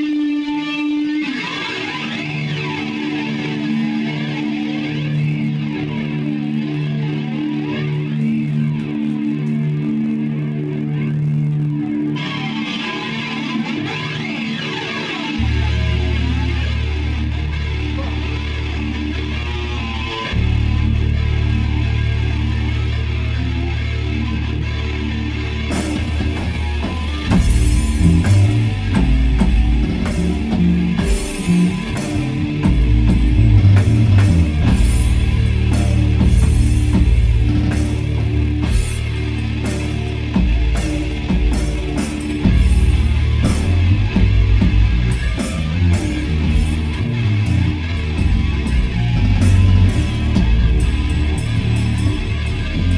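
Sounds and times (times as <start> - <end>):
electric guitar held notes: 0.0 - 52.9
rock band playing live: 0.0 - 52.9
deep bass note: 25.9 - 52.9.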